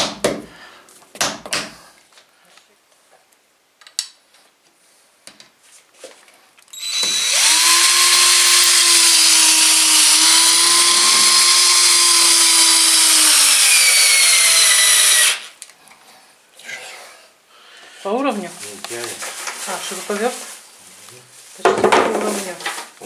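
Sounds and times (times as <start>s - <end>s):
electric drill boring into brick: 6.8s - 15.5s.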